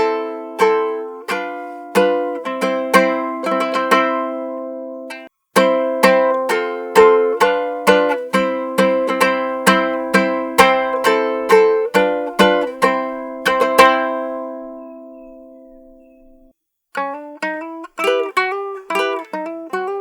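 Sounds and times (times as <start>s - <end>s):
plucked string instrument strummed: 0.0s - 20.0s.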